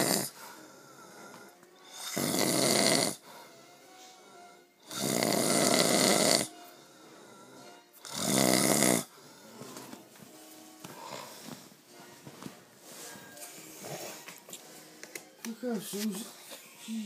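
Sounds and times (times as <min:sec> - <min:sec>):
man snoring loudly: 0:00.0 - 0:00.3, 0:01.8 - 0:03.2, 0:04.8 - 0:06.5, 0:07.4 - 0:09.6.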